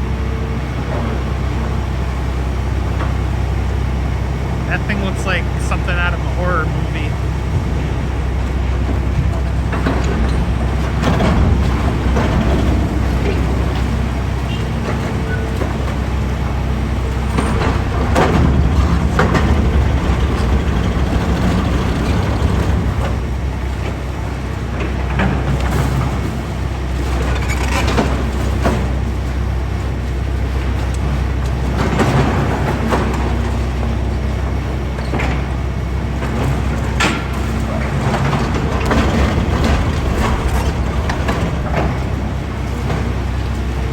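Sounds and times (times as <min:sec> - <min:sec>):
demolition machinery engine drone: 0:00.0 - 0:43.9
concrete crunching and clanking: 0:07.5 - 0:16.2.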